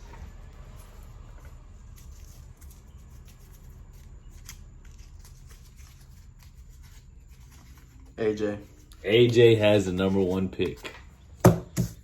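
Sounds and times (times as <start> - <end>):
paper crinkling: 0.8 - 11.2.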